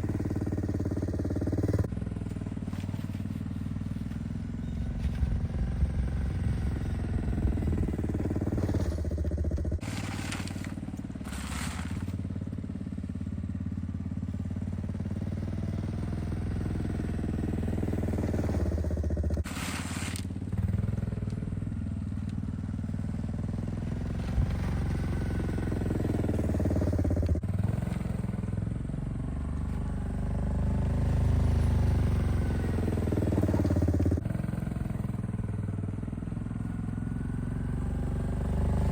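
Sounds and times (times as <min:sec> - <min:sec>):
atv engine running under load: 0:00.0 - 0:38.9
plow blade scraping: 0:02.2 - 0:12.8, 0:17.9 - 0:21.4, 0:22.2 - 0:28.1.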